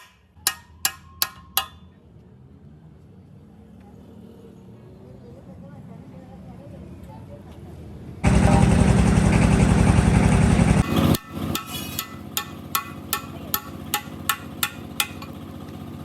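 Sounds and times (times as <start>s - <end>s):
loud machine running: 8.2s - 16.0s.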